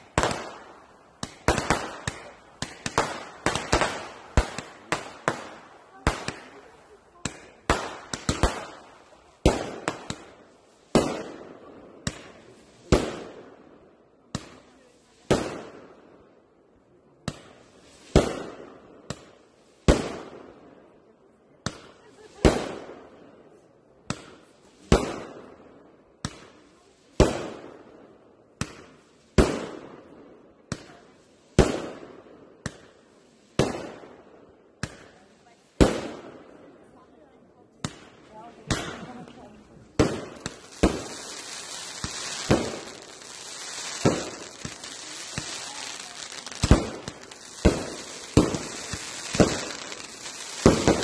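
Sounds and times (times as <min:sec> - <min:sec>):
fireworks bangs with echo: 0:00.0 - 0:16.1, 0:17.2 - 0:20.7, 0:21.6 - 0:23.3, 0:24.0 - 0:36.7, 0:37.8 - 0:51.0
firework launch pops: 0:32.6 - 0:32.9, 0:40.0 - 0:51.0.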